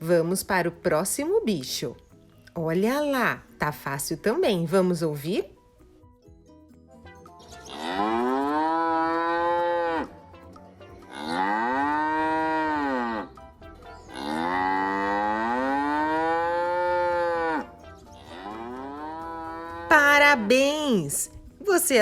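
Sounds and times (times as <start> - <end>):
cow mooing: 7.7 - 10.3, 11.0 - 13.4, 14.1 - 20.0.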